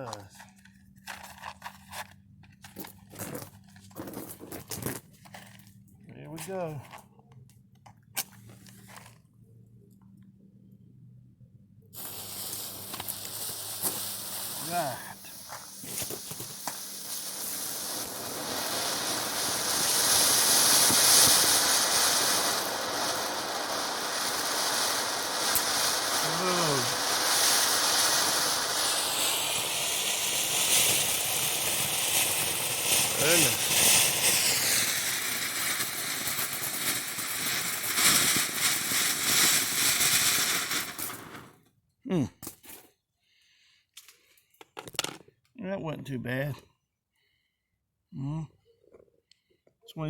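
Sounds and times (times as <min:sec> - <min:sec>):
firework spraying sparks hiss: 0:12.0 - 0:41.6.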